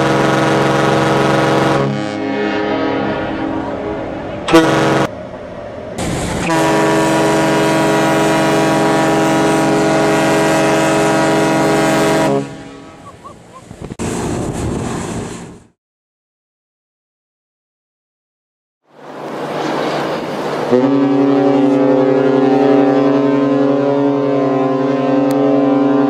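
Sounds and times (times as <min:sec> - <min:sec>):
ship horn blasts: 0:00.0 - 0:05.2, 0:06.0 - 0:13.3, 0:19.1 - 0:26.0.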